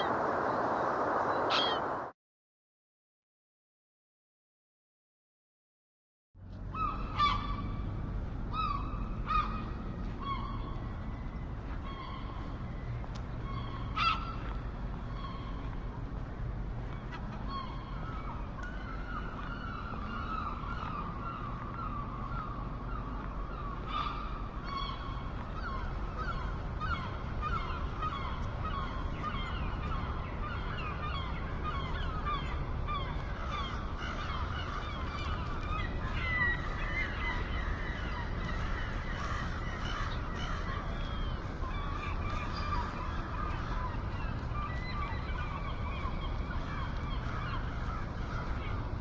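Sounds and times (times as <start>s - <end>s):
seagulls calling: 0.0s - 2.1s, 8.5s - 15.8s, 16.9s - 49.0s
steady low rumble: 0.0s - 2.1s.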